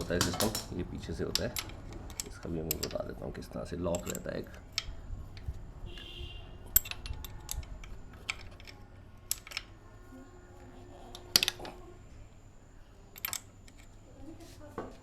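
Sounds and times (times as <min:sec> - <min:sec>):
clicks and taps of metal tools: 0:00.0 - 0:03.2, 0:06.7 - 0:09.7.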